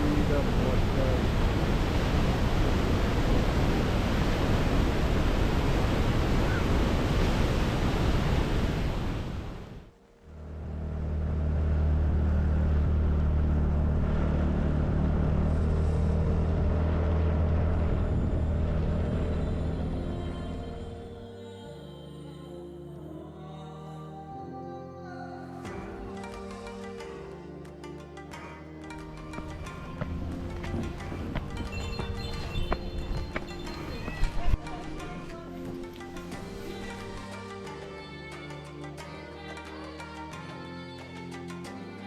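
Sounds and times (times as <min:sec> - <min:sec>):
steady low drone: 0:10.2 - 0:21.4.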